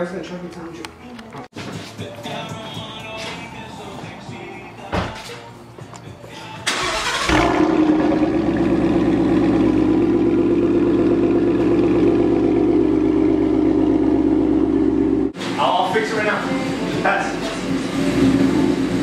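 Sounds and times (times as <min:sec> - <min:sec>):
car engine starting and idling: 0:06.4 - 0:15.4, 0:16.1 - 0:19.0.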